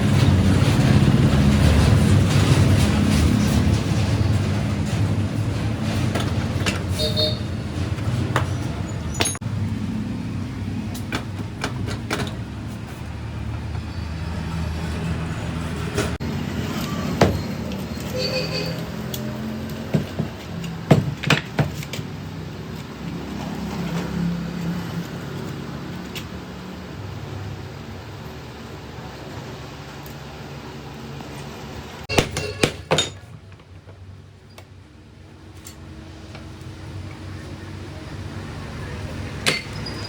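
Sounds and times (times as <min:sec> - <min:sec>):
vehicle engines humming: 0:00.0 - 0:20.9, 0:33.4 - 0:40.0.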